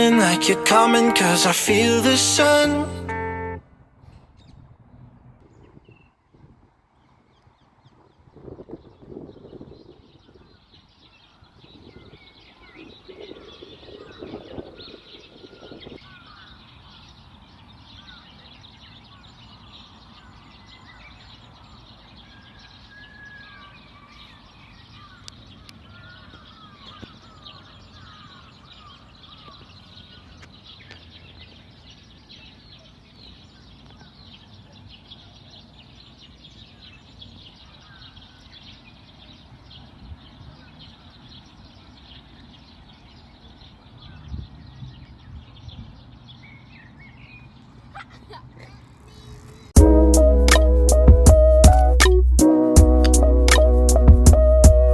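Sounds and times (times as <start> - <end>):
louder low sound: 0.0 - 3.6, 49.8 - 54.9
birds chirping and calling: 10.4 - 52.1.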